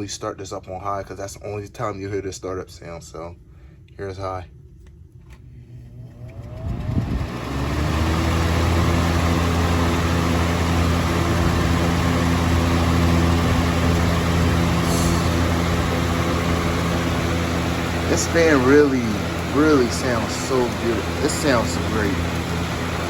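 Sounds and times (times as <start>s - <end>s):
box fan motor humming: 5.4s - 23.0s
air rushing from fan blades: 5.6s - 23.0s.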